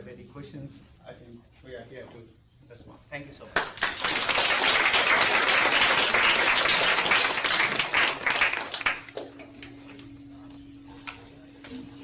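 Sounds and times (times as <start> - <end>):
audience applauding: 3.6 - 9.3.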